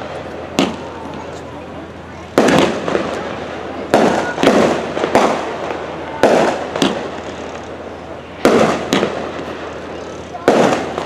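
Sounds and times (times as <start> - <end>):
fireworks bursting with echo: 0.0 - 11.0.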